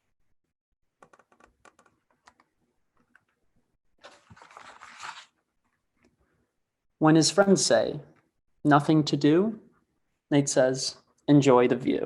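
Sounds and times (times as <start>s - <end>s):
crinkly paper clicks: 4.0s - 5.4s
page turning rustle: 4.0s - 5.4s.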